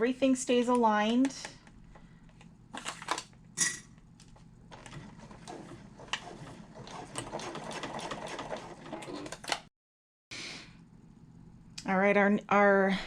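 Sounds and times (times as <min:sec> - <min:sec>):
sewing machine stitching: 0:04.8 - 0:09.7.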